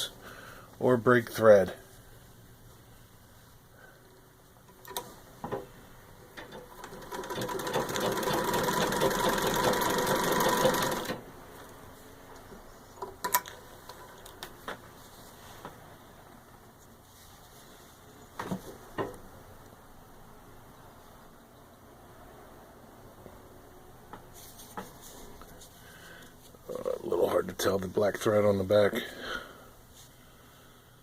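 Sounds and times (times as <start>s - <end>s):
sewing machine stitching rapidly: 6.5s - 11.2s.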